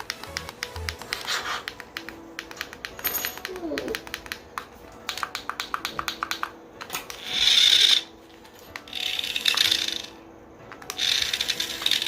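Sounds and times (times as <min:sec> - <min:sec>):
plastic toy car clicking and rattling: 0:08.8 - 0:10.1, 0:10.9 - 0:12.0.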